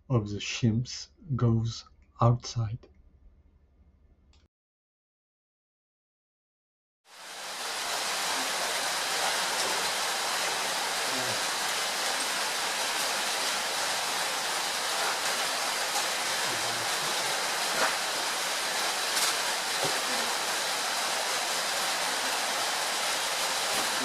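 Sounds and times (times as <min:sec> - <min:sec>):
rushing hiss: 0:07.1 - 0:24.0.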